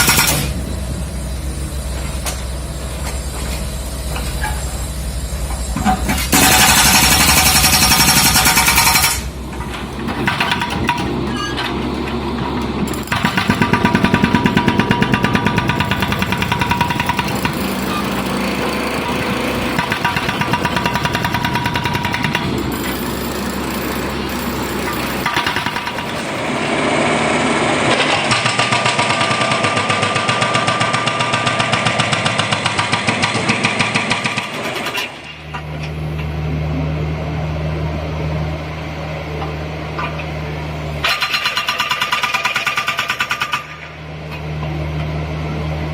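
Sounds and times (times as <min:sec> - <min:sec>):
diesel engine running: 0:00.0 - 0:41.2
hydraulic breaker hammering: 0:05.8 - 0:26.8.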